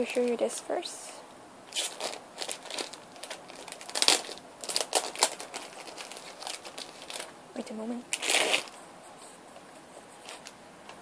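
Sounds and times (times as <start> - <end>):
packaging crinkling: 1.7 - 7.4, 8.1 - 8.8.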